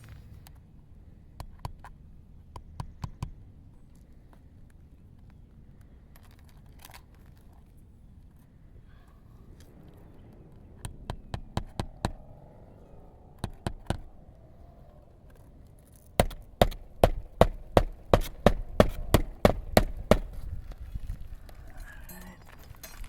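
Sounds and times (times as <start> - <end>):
hammer driving nails into shingles: 16.2 - 20.5.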